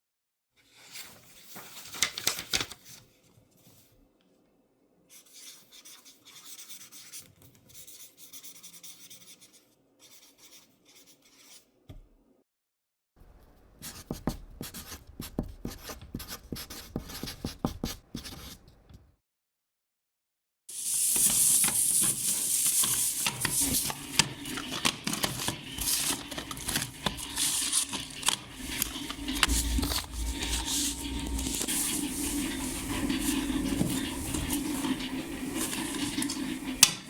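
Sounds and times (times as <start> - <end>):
rolling machine drum rattling: 28.6 - 37.0.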